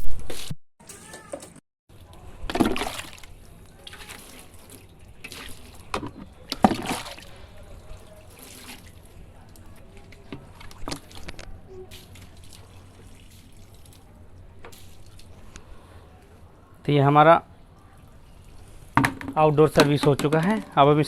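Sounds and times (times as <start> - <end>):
water trickling and dripping: 1.9 - 16.8
water splashing on metal coil: 2.0 - 7.4, 8.0 - 15.6.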